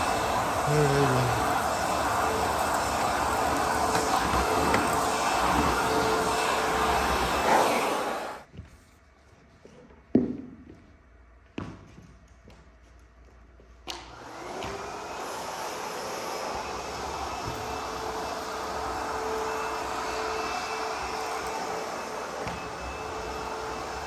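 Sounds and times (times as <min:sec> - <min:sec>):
vacuum motor rising whine: 0:00.0 - 0:08.5, 0:13.9 - 0:24.0
vacuum motor running: 0:00.0 - 0:08.5, 0:13.9 - 0:24.0.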